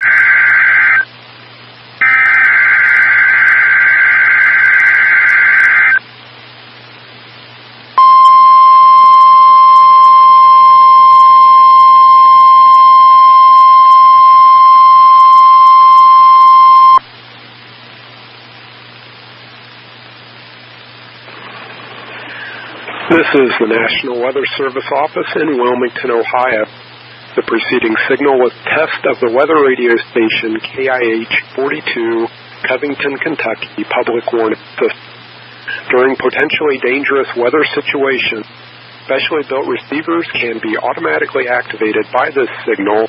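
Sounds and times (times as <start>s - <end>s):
steady warning alarm tone: 0.0s - 1.0s, 2.0s - 6.0s, 8.0s - 17.0s
low hum and hiss: 0.0s - 43.0s
data bursts: 2.0s - 6.0s.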